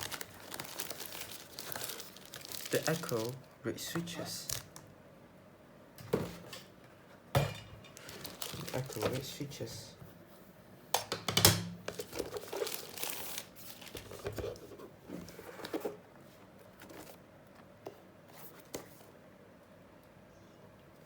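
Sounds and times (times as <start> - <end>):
packaging crinkling: 0.0 - 3.5, 8.0 - 9.4, 11.9 - 14.4.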